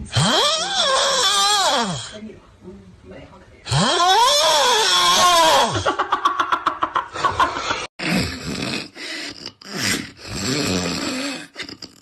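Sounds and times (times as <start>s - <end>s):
person snoring: 7.6s - 12.0s.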